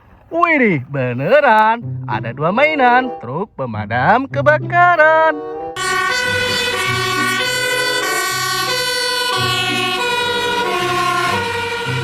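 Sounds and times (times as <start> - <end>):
background music: 1.4 - 12.0
fire engine siren: 5.8 - 12.0.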